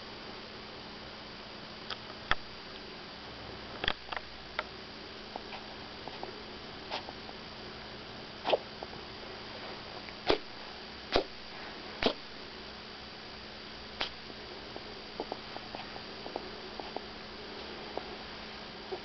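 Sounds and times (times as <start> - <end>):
electrical hum: 0.0 - 19.0
puppy coughing: 8.4 - 8.7.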